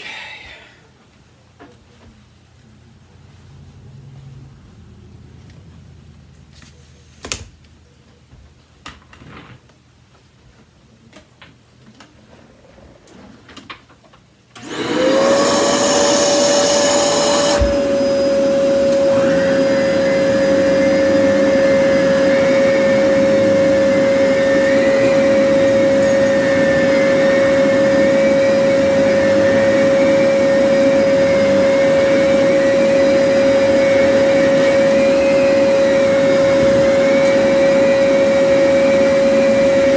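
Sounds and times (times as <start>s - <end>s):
vacuum cleaner motor whine: 14.6s - 39.9s.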